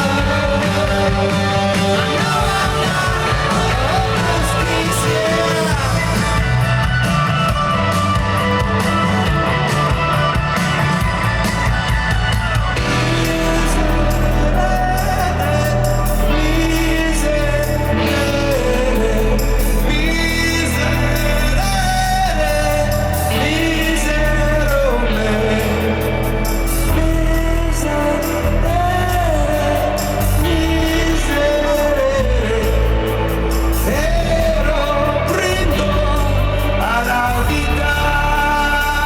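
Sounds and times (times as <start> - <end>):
male vocal singing: 0.0 - 6.5, 12.8 - 39.0
electric bass: 0.0 - 39.0
guitar: 0.0 - 39.0
steady drum beat: 0.0 - 39.0.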